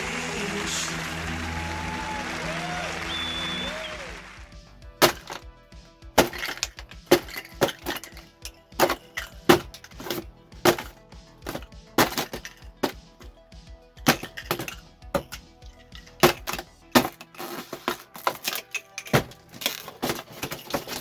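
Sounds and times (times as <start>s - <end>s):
quiet background music: 3.7s - 21.0s
packaging clicking and snapping: 14.1s - 21.0s.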